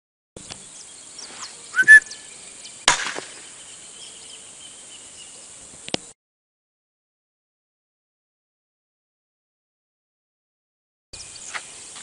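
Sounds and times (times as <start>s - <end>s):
faint bird chirps: 0.4s - 2.8s
rising whistle-like call: 1.7s - 2.3s
suppressed gunshot crack: 2.9s - 3.4s.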